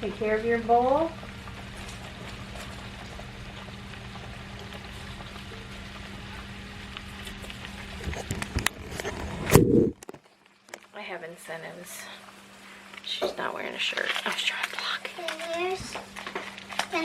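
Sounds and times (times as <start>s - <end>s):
boiling and sizzling hiss: 0.0s - 17.0s
low hum: 1.2s - 10.1s.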